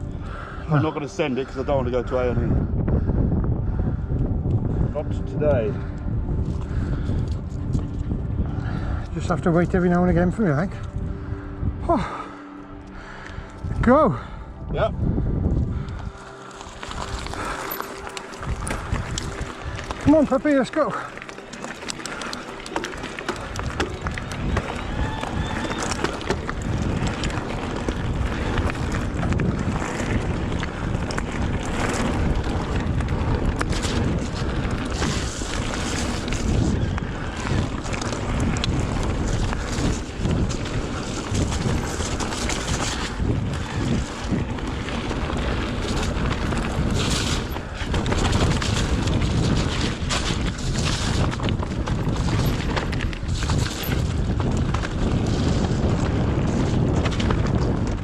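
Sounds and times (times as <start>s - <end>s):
wind buffeting microphone: 0.0s - 58.0s
bike rattling over bumps: 15.7s - 58.0s.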